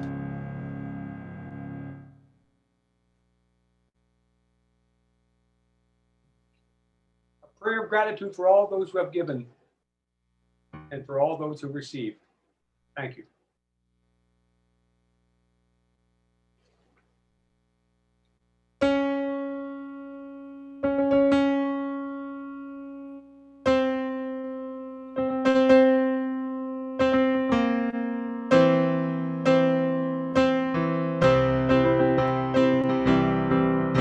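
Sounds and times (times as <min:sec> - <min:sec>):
piano playing slowly: 0:00.0 - 0:02.3, 0:18.8 - 0:34.0.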